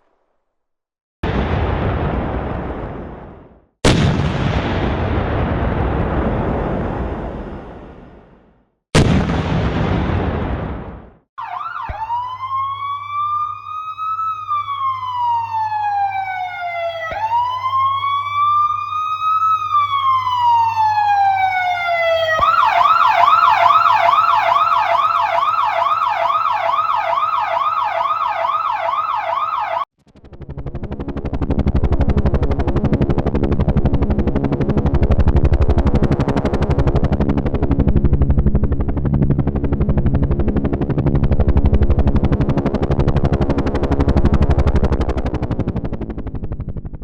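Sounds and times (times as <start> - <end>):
loud blast: 1.2 - 11.2
emergency vehicle siren: 11.4 - 31.1.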